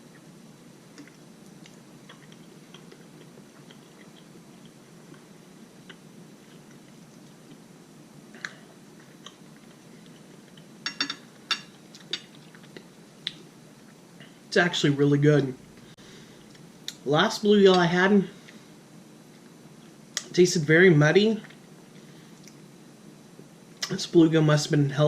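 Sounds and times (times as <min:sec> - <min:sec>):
person chewing: 0:00.9 - 0:07.7, 0:11.7 - 0:14.0.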